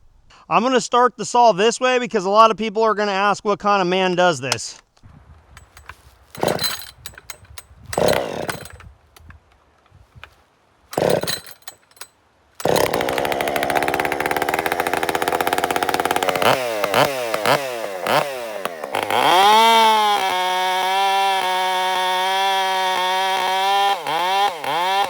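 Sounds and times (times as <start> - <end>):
starter cord pulls: 4.5 - 20.4
chainsaw engine revving: 5.5 - 9.3, 10.0 - 25.0.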